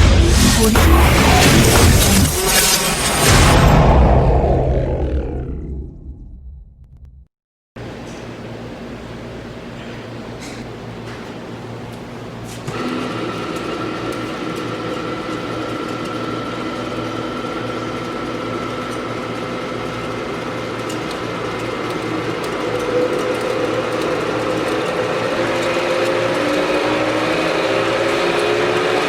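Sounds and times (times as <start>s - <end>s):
drill press humming: 12.0s - 29.0s.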